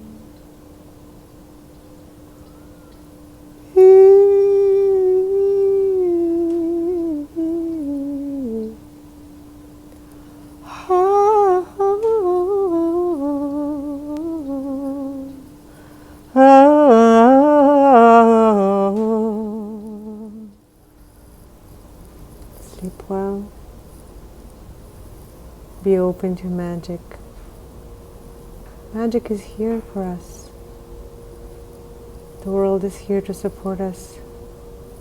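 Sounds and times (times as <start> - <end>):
steady drone note: 0.0 - 0.4, 10.6 - 20.6, 26.8 - 35.0
woman humming melody: 0.0 - 0.4, 3.7 - 8.9, 10.6 - 20.6, 22.6 - 23.5, 28.8 - 30.6, 32.2 - 35.0.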